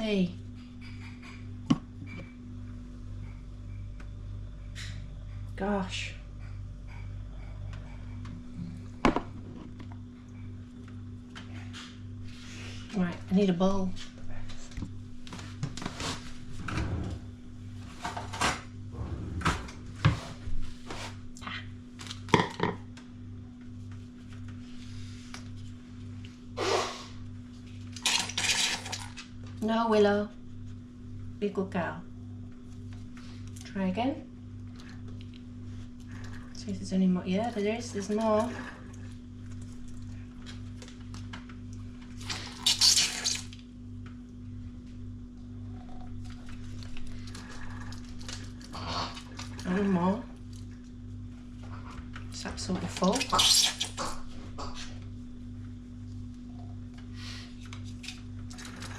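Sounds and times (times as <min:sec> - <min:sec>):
low hum: 0:00.0 - 0:21.9
steady low hum: 0:00.0 - 0:58.9.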